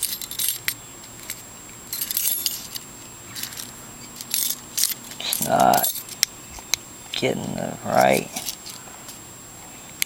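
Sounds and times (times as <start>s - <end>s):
key clicking and scraping in lock: 0.0s - 1.4s, 2.0s - 6.2s.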